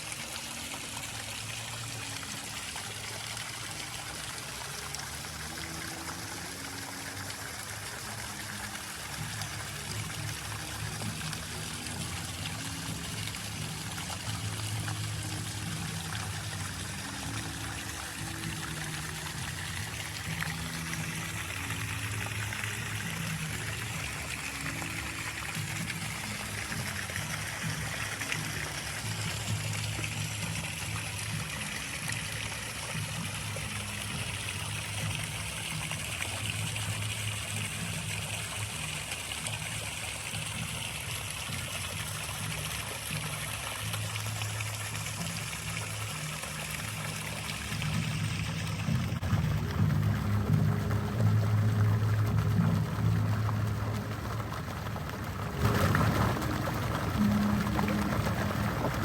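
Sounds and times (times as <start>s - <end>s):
water trickling: 0.0s - 59.0s
low shifting tones: 46.5s - 59.0s.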